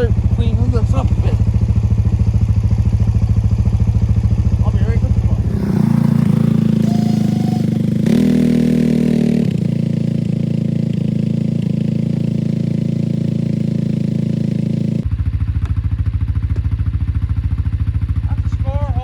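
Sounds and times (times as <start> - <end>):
quad bike engine revving: 0.0 - 15.1.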